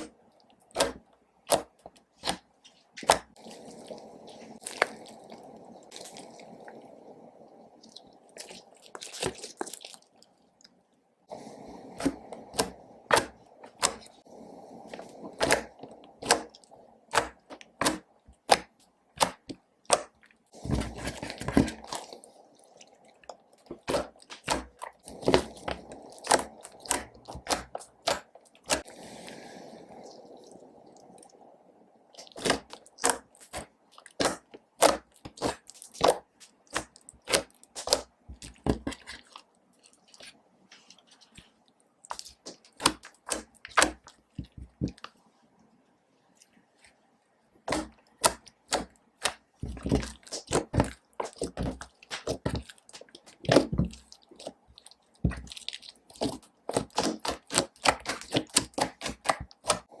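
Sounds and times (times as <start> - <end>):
slime clicking and popping: 23.7 - 28.8, 32.2 - 39.2, 55.2 - 59.9.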